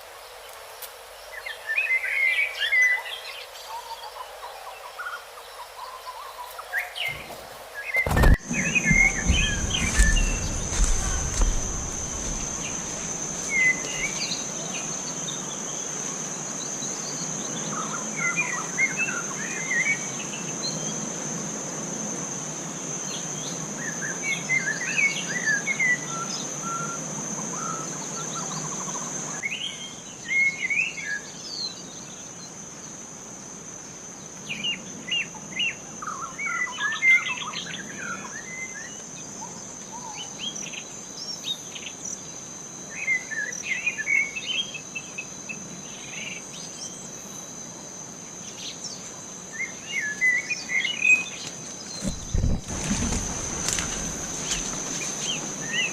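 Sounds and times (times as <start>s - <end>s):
background hiss: 0.0s - 55.9s
high-pitched insect whine: 0.0s - 55.9s
birds chirping: 5.4s - 15.7s, 48.7s - 55.9s.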